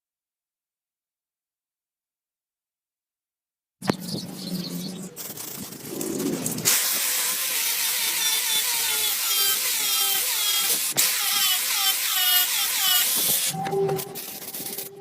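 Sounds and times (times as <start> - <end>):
small motor running: 6.6 - 13.6
loud steady hiss: 6.7 - 13.6
short falling squeals: 11.4 - 15.0.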